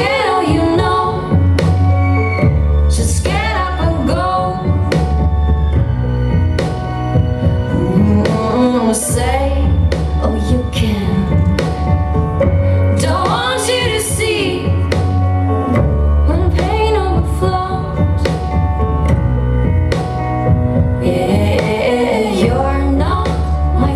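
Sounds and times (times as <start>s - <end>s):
woman singing: 0.0s - 2.0s, 2.8s - 5.2s, 7.7s - 18.6s, 21.0s - 23.9s.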